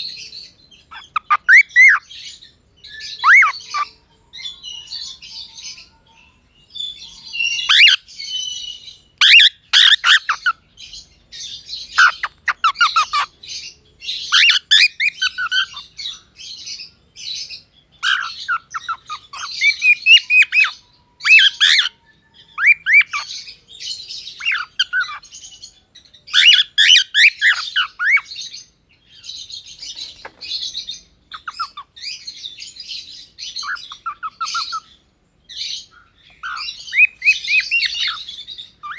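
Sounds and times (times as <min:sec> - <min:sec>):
cockatiel chirping and whistling: 0:00.9 - 0:02.0, 0:02.9 - 0:03.9, 0:07.4 - 0:10.5, 0:12.0 - 0:13.3, 0:14.2 - 0:15.8, 0:18.0 - 0:22.0, 0:22.6 - 0:23.3, 0:24.4 - 0:25.2, 0:26.3 - 0:28.3, 0:31.3 - 0:32.0, 0:33.6 - 0:34.9, 0:36.4 - 0:38.2
cockatiel squawks: 0:03.2 - 0:03.9, 0:07.6 - 0:08.0, 0:09.2 - 0:10.5, 0:12.0 - 0:13.3, 0:14.3 - 0:15.8, 0:26.3 - 0:28.3, 0:31.3 - 0:31.9.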